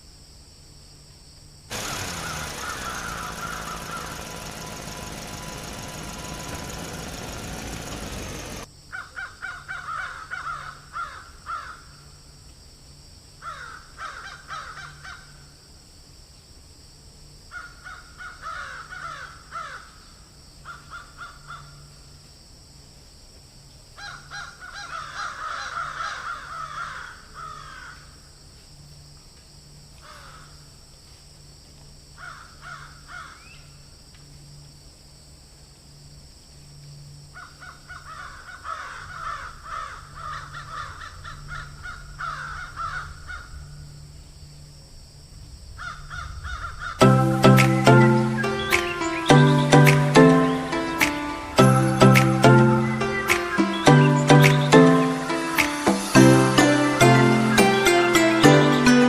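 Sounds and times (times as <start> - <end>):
harsh bird calls: 1.7 - 8.7, 46.7 - 55.8
loud noise with falling tone: 1.7 - 8.7.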